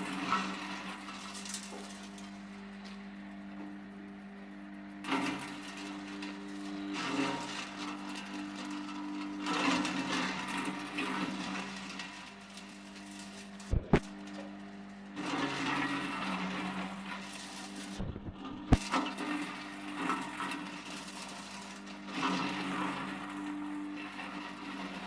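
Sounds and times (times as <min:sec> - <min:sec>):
feed chopper motor hum: 0:05.0 - 0:14.6, 0:15.2 - 0:25.0.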